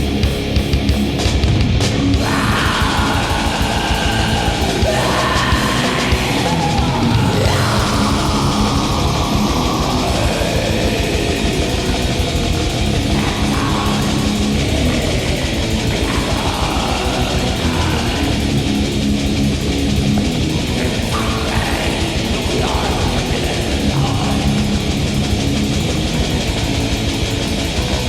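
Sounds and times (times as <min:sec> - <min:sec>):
black metal music: 0:00.0 - 0:28.0.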